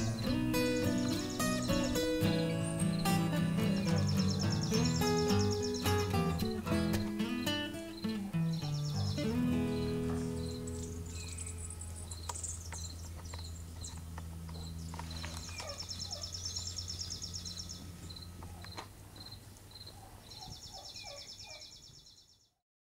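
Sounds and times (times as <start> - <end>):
insects chirping: 0.0 - 21.8
low steady hum: 9.2 - 19.7.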